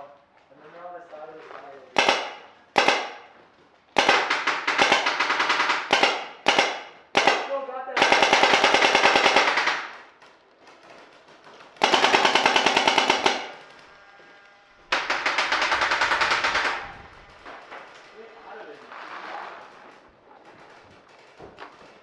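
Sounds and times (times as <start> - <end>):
paintball marker rapid fire: 2.0 - 3.3, 4.0 - 10.2, 11.6 - 13.7, 14.9 - 17.0.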